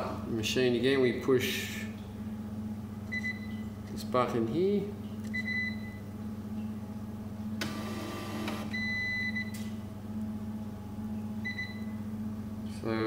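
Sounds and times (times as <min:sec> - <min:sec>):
mains hum: 0:00.0 - 0:13.0
label printer running: 0:07.6 - 0:08.7.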